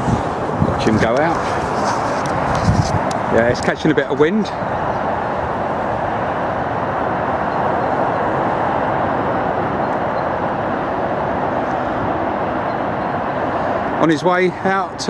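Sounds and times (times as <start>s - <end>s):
steady rushing noise: 0.0s - 15.0s.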